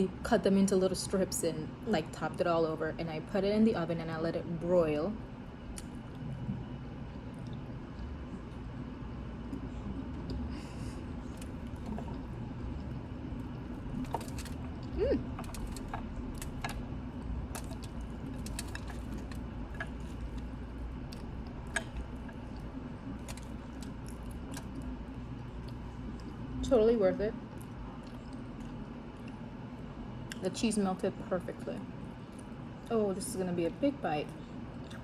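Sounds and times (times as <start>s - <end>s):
steady low hum: 0.0s - 35.0s
food being chewed: 5.6s - 8.8s, 9.4s - 26.6s, 27.4s - 30.4s, 32.2s - 32.9s, 34.3s - 35.0s.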